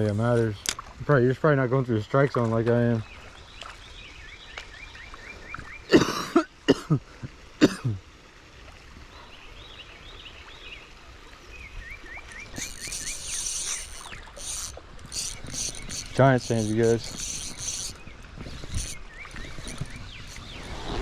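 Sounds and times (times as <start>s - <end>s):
person coughing: 5.9s - 7.0s, 7.6s - 8.0s.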